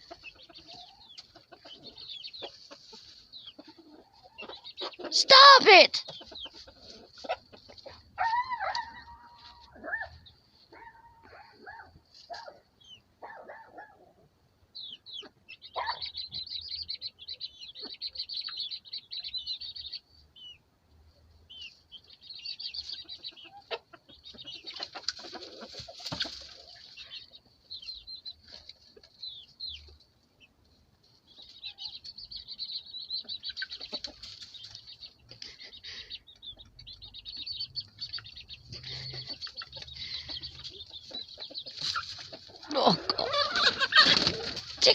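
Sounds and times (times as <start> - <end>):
chickens clucking: 0.0 - 44.9
chicks cheeping: 0.0 - 44.9
wings flapping: 43.6 - 44.8.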